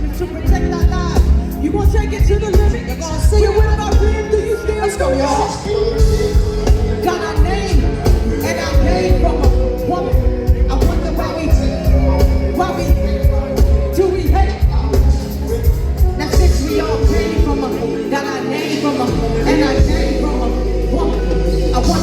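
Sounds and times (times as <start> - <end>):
person singing: 0.0 - 22.0
heavy bass beat: 5.8 - 18.1, 19.1 - 22.0.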